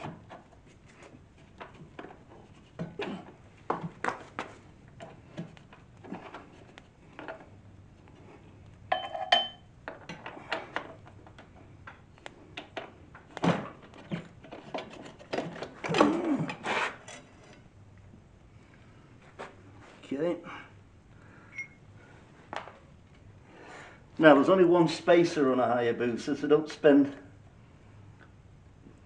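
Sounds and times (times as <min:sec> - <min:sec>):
ringing metal clink: 0:08.9 - 0:09.7.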